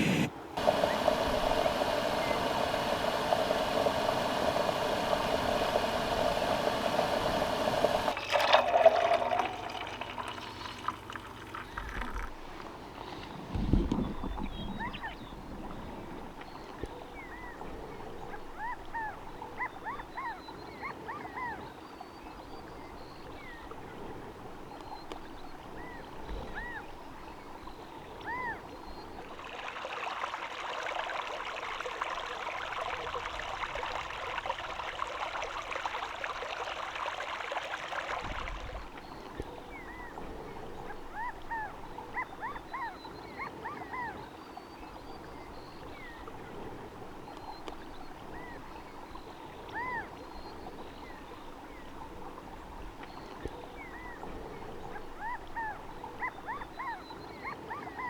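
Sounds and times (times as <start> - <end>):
loud even hiss: 0.0 - 8.2
steady background hiss: 0.0 - 11.4.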